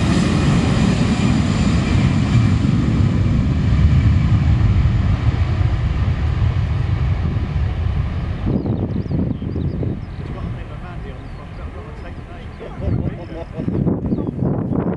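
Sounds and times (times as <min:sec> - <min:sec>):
jet engines roaring at takeoff: 0:00.0 - 0:14.9.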